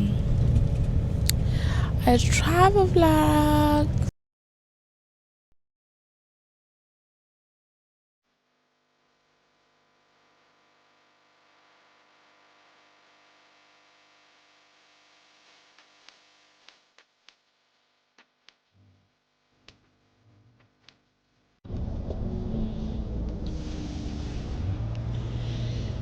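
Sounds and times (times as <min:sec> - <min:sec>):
faint steady hum: 0:00.0 - 0:04.1
loud vehicle rumble: 0:00.0 - 0:04.1, 0:21.7 - 0:26.0.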